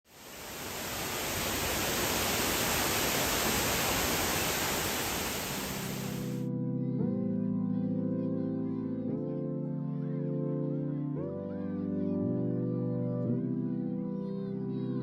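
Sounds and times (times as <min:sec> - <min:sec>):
waterfall rushing: 0:00.1 - 0:06.4.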